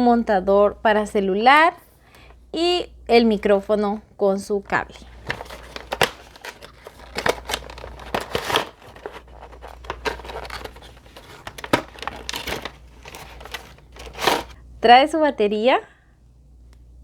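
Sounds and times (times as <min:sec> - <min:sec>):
plastic and cardboard crinkling: 0:04.5 - 0:14.6.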